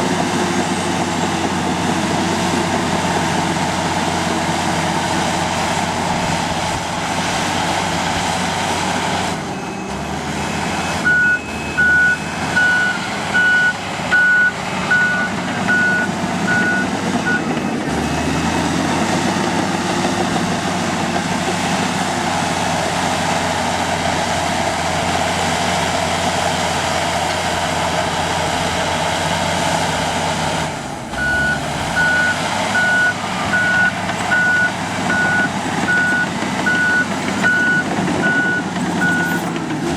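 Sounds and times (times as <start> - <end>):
bulldozer diesel engine running: 0.0 - 39.9
reversing alarm beeping: 9.5 - 18.3, 31.2 - 39.6.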